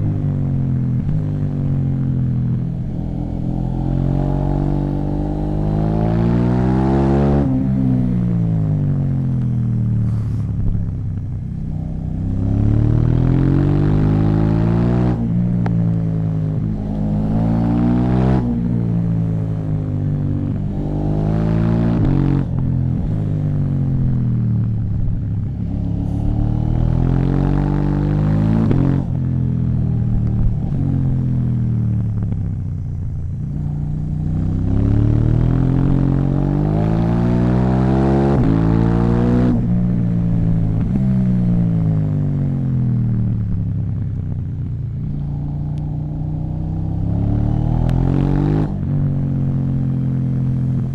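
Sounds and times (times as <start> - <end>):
motorcycle engine revving: 0.0 - 50.9.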